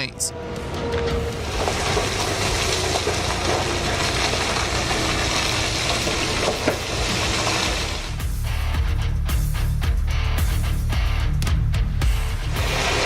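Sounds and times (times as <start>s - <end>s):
heavy truck engine running: 0.0s - 8.4s
music: 0.1s - 13.0s.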